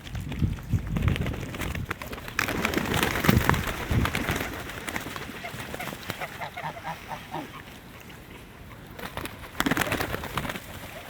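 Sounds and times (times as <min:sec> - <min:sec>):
geese and ducks honking: 0:05.3 - 0:08.9.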